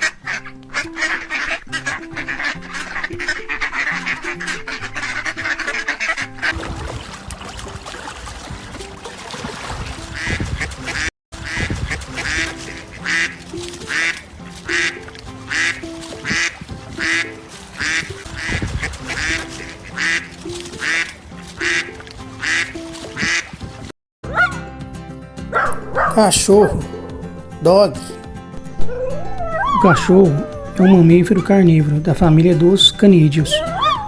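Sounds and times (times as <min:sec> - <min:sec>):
duck quacking: 0:00.0 - 0:06.6, 0:10.1 - 0:23.5
background music: 0:00.0 - 0:34.0.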